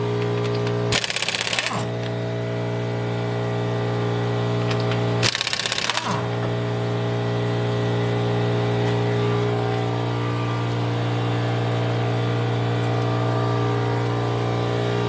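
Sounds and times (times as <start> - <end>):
steady droning hum: 0.0 - 15.0
impact wrench hammering: 0.9 - 1.9, 5.2 - 6.4.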